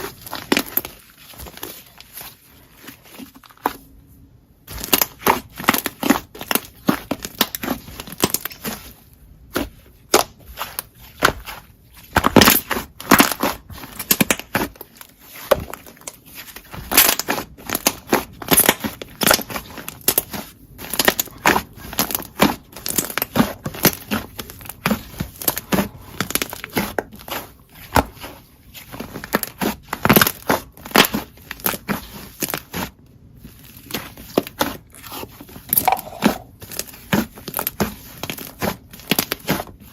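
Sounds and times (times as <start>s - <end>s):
slime squeezed crackling: 33.7s - 37.3s.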